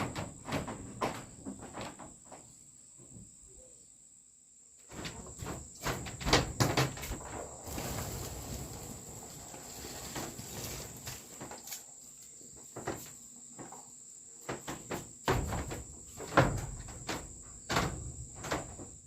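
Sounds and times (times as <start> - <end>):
irregular knocks and clunks: 0.0 - 2.4, 4.8 - 8.0, 14.4 - 19.0
high insect trill: 0.0 - 19.0.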